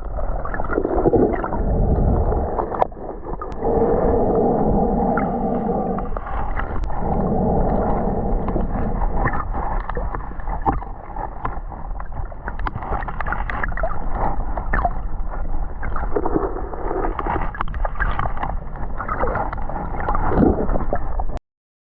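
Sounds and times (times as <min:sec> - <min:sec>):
water gurgling: 0:00.0 - 0:21.3
underwater low rumble: 0:00.0 - 0:21.4
clicks and crackles: 0:08.4 - 0:21.0.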